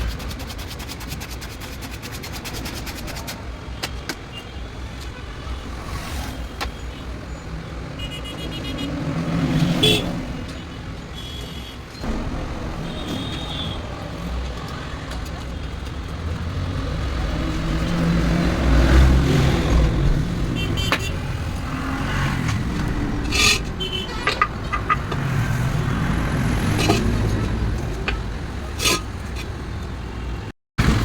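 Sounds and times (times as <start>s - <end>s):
traffic noise: 0.0s - 31.0s
vehicle engine rumble: 12.0s - 31.0s
sharp clicks and knocks: 26.7s - 29.6s.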